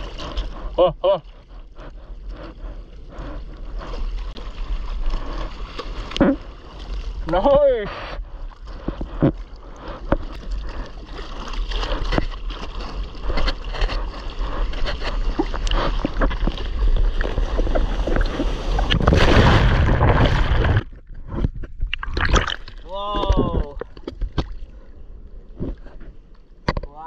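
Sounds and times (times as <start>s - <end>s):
sea water splashing: 0.0s - 21.0s, 21.8s - 24.9s
wind rumble on microphone: 11.9s - 22.0s.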